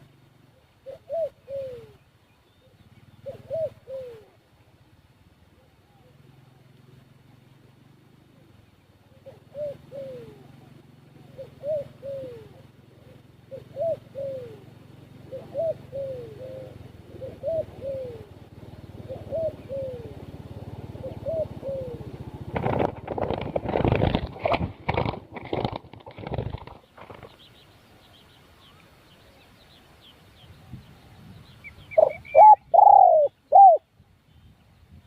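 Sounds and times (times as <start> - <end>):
dove cooing: 0.5 - 4.7, 5.5 - 7.0, 8.3 - 27.5, 31.6 - 33.9
rustling and knocking: 22.5 - 27.4.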